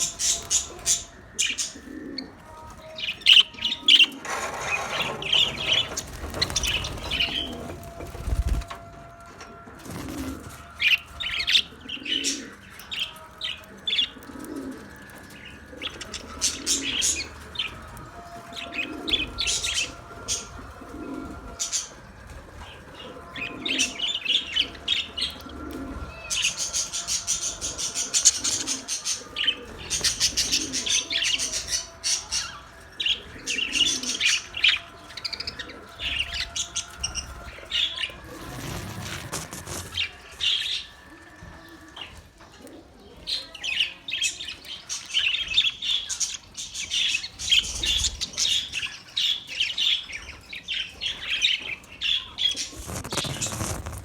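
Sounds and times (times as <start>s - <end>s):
parrots chirping and chattering: 0.0s - 8.5s, 23.2s - 41.0s, 43.3s - 54.0s
low bird coo: 0.0s - 46.2s, 51.0s - 54.0s.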